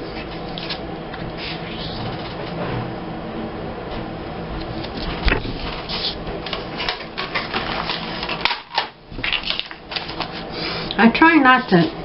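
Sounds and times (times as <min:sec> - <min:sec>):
paper rustling: 0:05.6 - 0:10.5.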